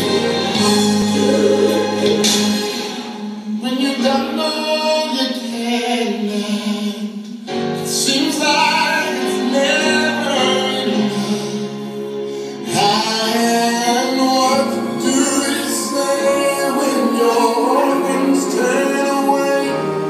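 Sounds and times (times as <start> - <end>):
instrumental backing: 0.0 - 4.4, 7.4 - 20.0
gospel singing voices: 0.0 - 20.0.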